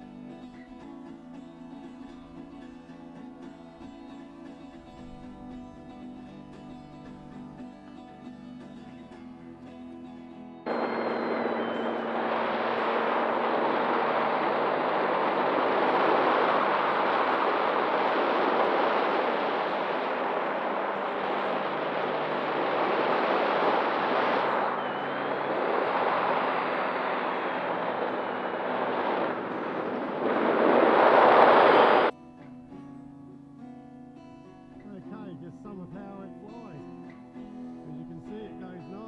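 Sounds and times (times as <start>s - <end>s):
faint high whine: 10.6s - 32.1s
wind rushing over microphone: 10.7s - 32.1s.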